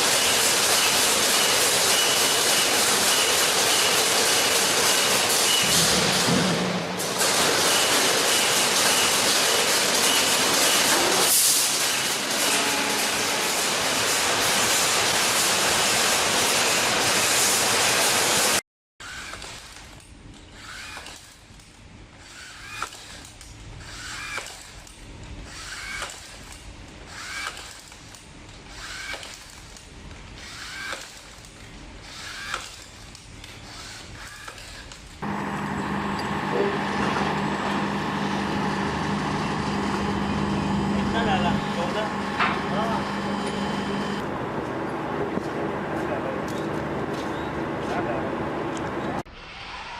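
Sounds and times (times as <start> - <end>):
rebar tying tool whir and click: 0.0 - 13.8, 19.0 - 35.2
rebar-tying machine hum: 0.0 - 45.6.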